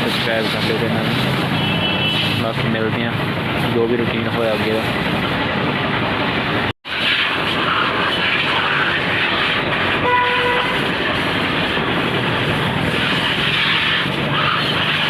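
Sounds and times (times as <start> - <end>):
traffic rushing: 0.0 - 15.0
wind: 0.0 - 15.0
short horn beep: 1.5 - 2.4, 10.0 - 10.8.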